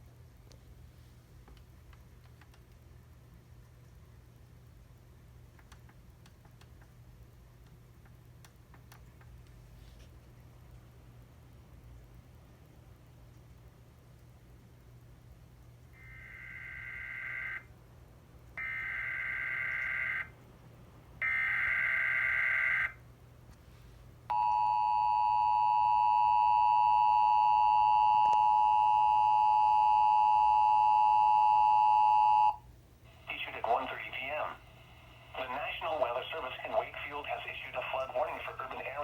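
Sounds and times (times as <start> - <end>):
steady two-tone alert signal: 24.3 - 32.6.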